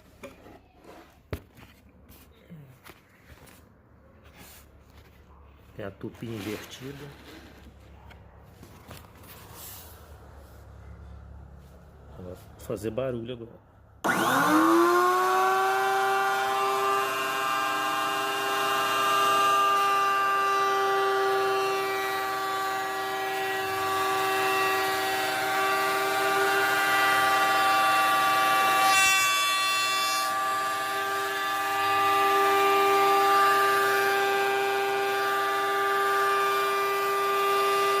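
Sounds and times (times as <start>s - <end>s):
router whining: 14.0s - 38.0s.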